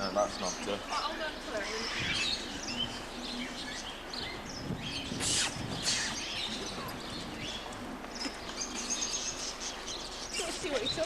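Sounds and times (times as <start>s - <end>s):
birds chirping: 0.0s - 11.0s
busy background noise: 0.0s - 11.0s
short bursts of hiss: 5.2s - 6.2s.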